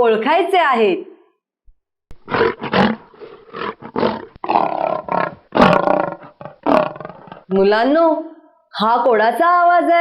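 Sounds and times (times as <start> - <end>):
lion roaring: 2.2 - 7.5.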